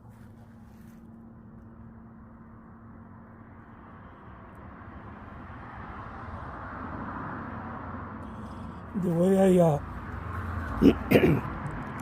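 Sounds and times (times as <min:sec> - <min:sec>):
faint steady hum: 0:00.0 - 0:05.4
vehicle approaching: 0:00.0 - 0:12.0.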